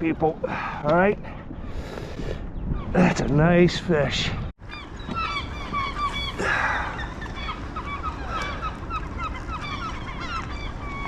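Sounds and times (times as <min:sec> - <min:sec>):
gulls calling: 0:00.0 - 0:11.0.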